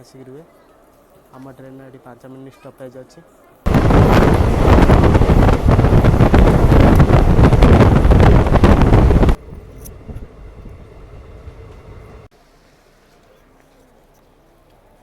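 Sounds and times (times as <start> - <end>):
train rushing: 3.7 - 12.3
wind buffeting microphone: 3.7 - 12.3.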